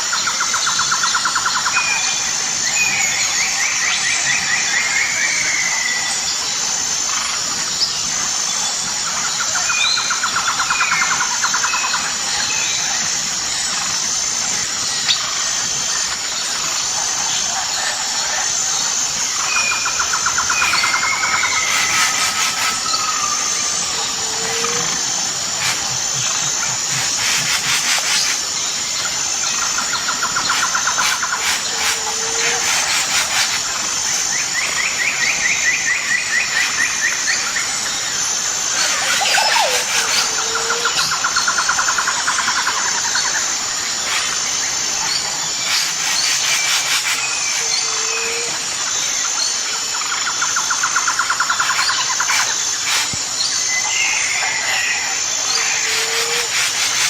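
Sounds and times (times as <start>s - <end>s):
high insect drone: 0.0s - 57.0s
trilling calls: 19.0s - 38.0s, 38.7s - 48.7s, 50.1s - 57.0s.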